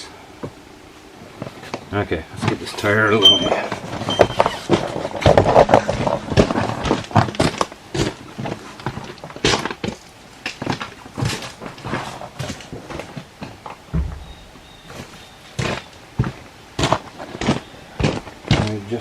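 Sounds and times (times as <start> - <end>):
footsteps with scuffs: 14.0 - 18.7.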